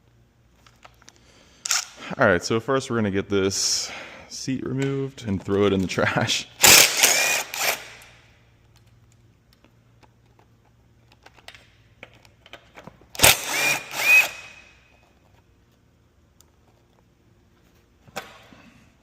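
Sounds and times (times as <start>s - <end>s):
power drill spinning up: 6.6s - 8.0s, 13.2s - 14.7s.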